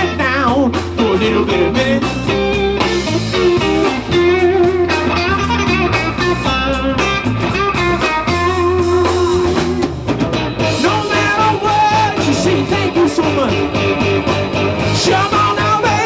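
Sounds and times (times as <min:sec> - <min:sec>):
electric guitar: 0:00.0 - 0:16.0
live blues band playing: 0:00.0 - 0:16.0.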